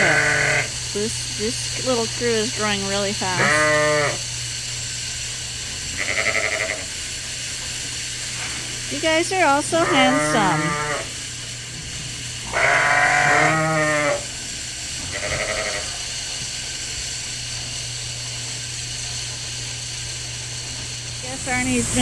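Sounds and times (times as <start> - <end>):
sheep bleating: 0.0 - 0.7, 3.4 - 4.2, 6.0 - 6.9, 9.7 - 11.2, 12.5 - 14.3, 15.1 - 16.0
steady low hum: 0.0 - 22.0.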